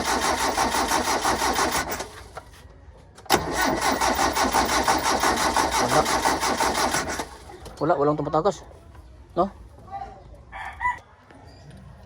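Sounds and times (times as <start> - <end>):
starter motor cranking engine: 0.0 - 2.4, 3.3 - 7.5.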